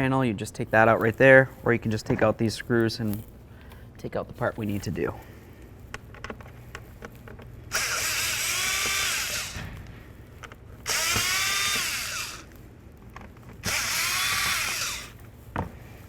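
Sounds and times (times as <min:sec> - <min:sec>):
cordless drill whining: 0:07.7 - 0:09.7, 0:10.8 - 0:12.5, 0:13.6 - 0:15.2.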